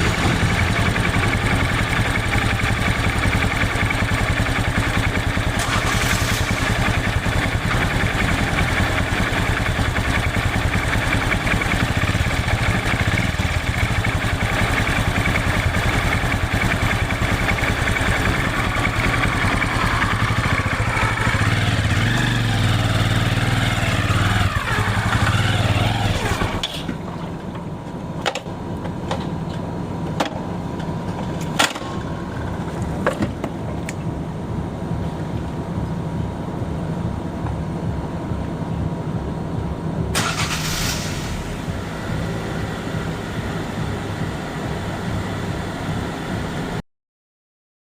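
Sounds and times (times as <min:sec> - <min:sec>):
motorcycle engine running: 0:00.0 - 0:26.6, 0:41.4 - 0:46.8.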